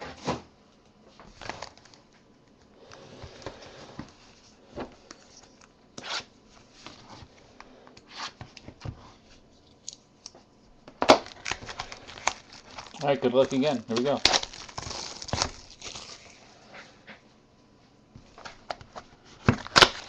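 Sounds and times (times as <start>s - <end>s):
cards rustling and tapping: 9.8s - 15.7s.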